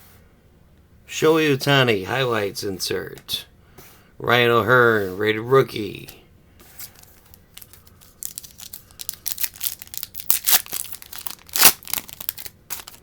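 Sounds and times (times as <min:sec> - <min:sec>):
plastic wrapper crinkling and tearing: 0:07.0 - 0:13.0.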